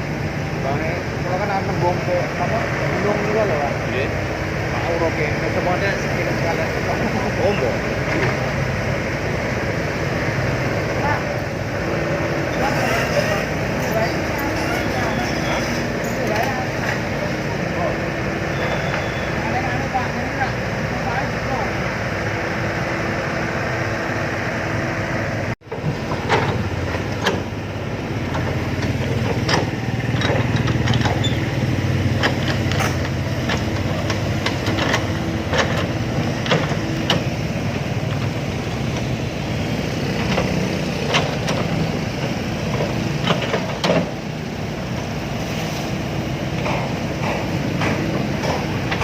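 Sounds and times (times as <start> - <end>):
excavator diesel engine running: 0.0 - 49.0
metal clanks and knocks: 28.2 - 37.5, 46.4 - 49.0.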